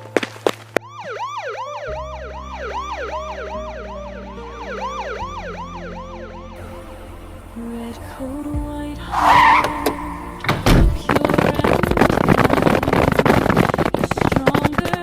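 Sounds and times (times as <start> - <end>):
emergency siren yelping: 6.6 - 11.1.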